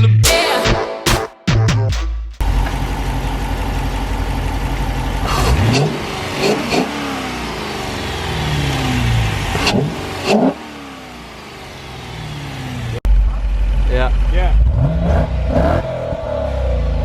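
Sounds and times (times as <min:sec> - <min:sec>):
car engine idling and revving: 0:02.4 - 0:17.0.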